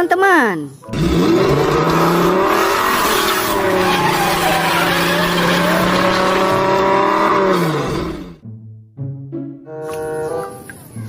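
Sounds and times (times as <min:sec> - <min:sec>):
racing car engine at high revs: 0:00.9 - 0:08.4.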